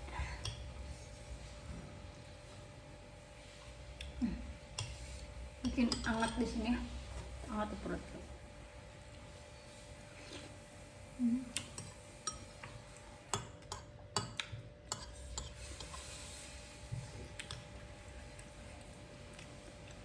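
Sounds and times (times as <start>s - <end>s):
spoon clinking against bowl: 11.6s - 12.6s.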